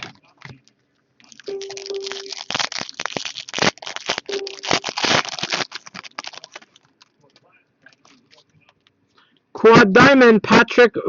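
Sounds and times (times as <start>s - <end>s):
plastic wrapper crinkling: 0.0s - 8.8s.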